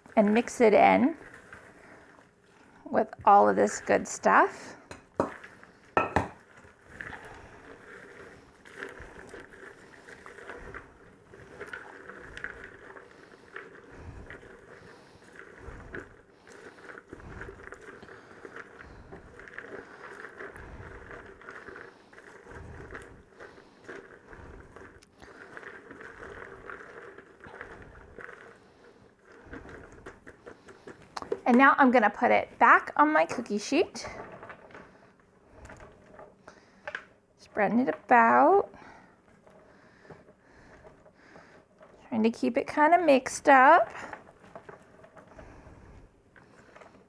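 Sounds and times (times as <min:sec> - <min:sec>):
spoon stirring popcorn in bowl: 0:00.0 - 0:47.0
dull knocks against bowl: 0:06.0 - 0:06.4.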